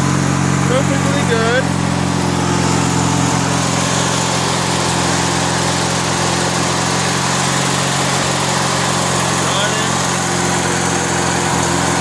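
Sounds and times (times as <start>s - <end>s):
riding lawn mower engine running: 0.0s - 12.0s.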